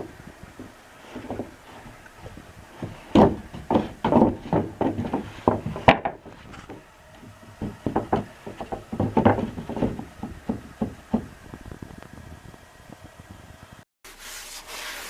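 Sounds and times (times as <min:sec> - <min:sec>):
wooden pieces knocking together: 0:00.0 - 0:11.8.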